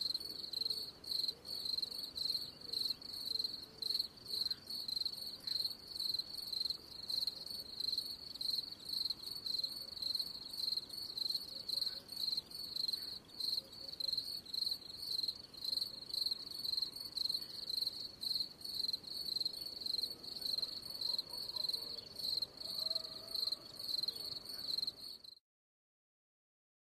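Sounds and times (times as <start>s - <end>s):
cricket chirping: 0.0s - 25.4s.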